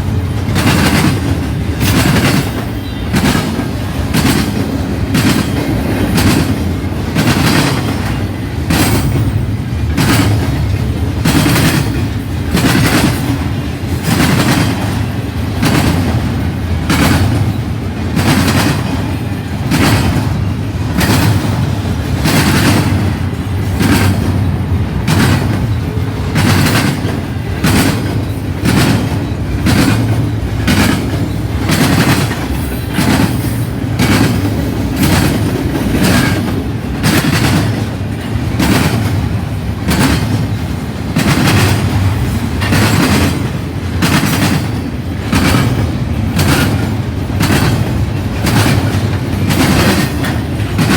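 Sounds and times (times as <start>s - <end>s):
freight train rumbling past: 0.0s - 50.9s
wheels clacking over rail joints: 0.0s - 50.9s.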